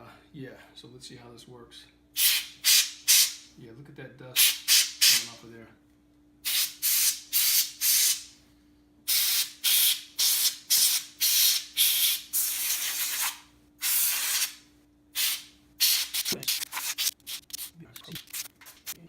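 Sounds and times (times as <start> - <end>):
compressed air hissing blasts: 2.2 - 3.4, 4.4 - 5.3, 6.4 - 8.4, 9.1 - 14.6, 15.2 - 19.0.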